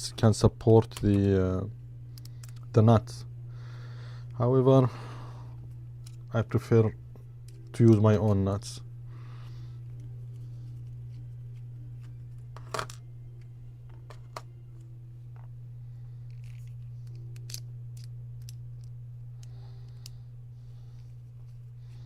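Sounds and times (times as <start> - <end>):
steady low hum: 0.0 - 22.0
clicks of small parts handled: 0.8 - 1.3, 2.2 - 2.7, 16.3 - 20.2.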